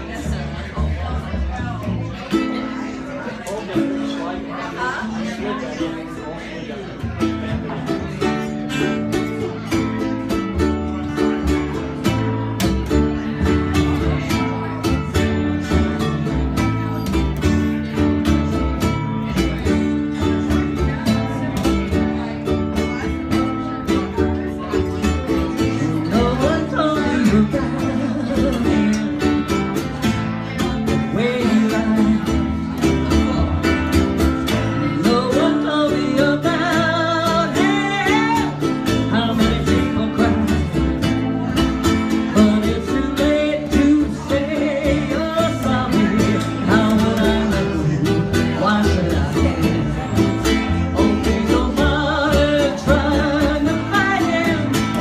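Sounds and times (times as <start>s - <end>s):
country guitar music with steady beat: 0.0s - 55.0s
person singing: 24.2s - 33.7s, 34.5s - 55.0s.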